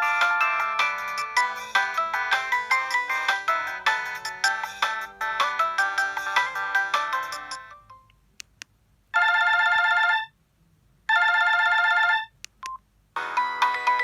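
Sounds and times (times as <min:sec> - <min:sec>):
melodic phone ringtone: 0:00.0 - 0:08.0, 0:09.2 - 0:10.3, 0:13.2 - 0:14.0.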